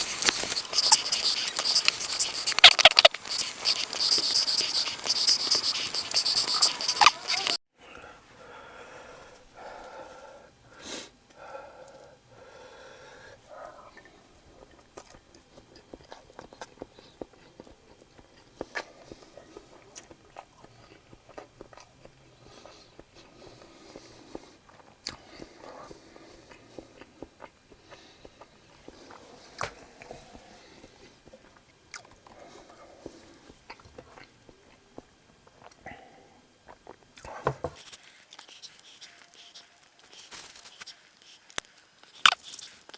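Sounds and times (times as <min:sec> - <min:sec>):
mouth smacks: 0:00.0 - 0:07.6, 0:37.2 - 0:42.9
person chewing crunchy food: 0:00.0 - 0:07.6, 0:37.8 - 0:42.9.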